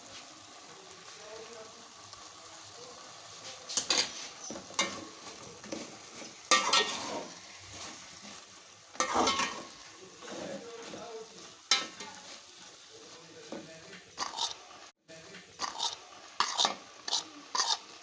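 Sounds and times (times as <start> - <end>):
low sizzle of frying: 0.0 - 18.0
metal spoon scraping a pan: 3.6 - 14.7, 15.6 - 18.0.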